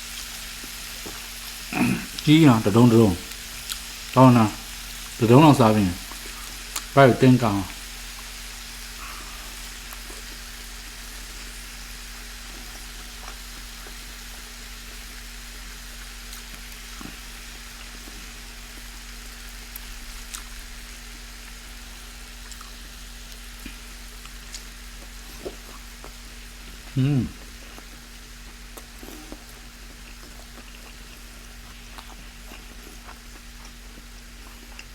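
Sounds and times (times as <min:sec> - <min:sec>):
background hiss: 0:00.0 - 0:34.4
soft eating clicks: 0:06.0 - 0:08.3, 0:22.4 - 0:26.2, 0:26.8 - 0:34.9.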